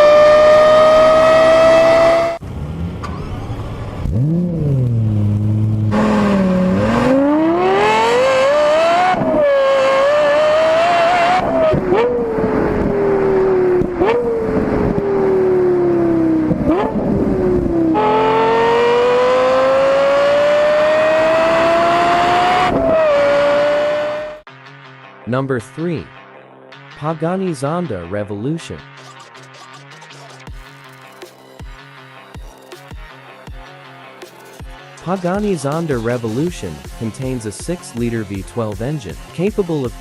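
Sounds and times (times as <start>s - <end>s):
sports car engine revving: 0.0s - 24.4s.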